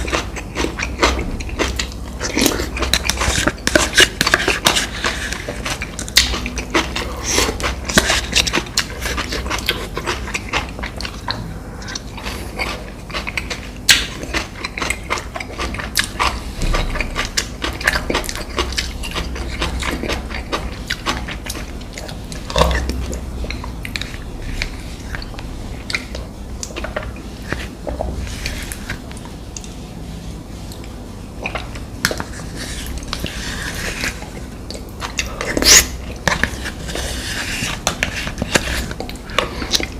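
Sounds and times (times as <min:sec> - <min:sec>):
crunchy chewing: 0:00.0 - 0:29.8, 0:30.7 - 0:39.9
wet mouth sounds: 0:30.7 - 0:39.9.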